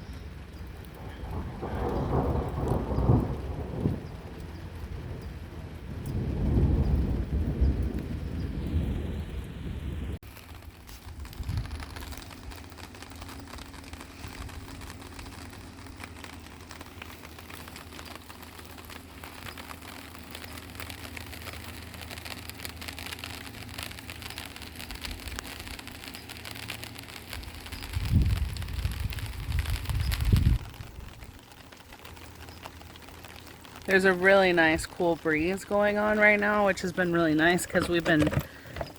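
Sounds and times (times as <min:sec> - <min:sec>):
steady rain falling: 0:00.0 - 0:38.9
low rumbling thunder: 0:00.3 - 0:10.2, 0:27.4 - 0:31.4.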